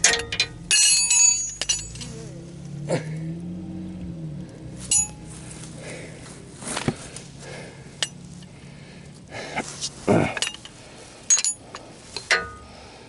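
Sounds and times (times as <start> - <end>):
metal tools clinking: 0.0 - 2.7, 4.9 - 5.4, 8.0 - 8.5, 9.8 - 12.8
low steady hum: 0.0 - 13.0.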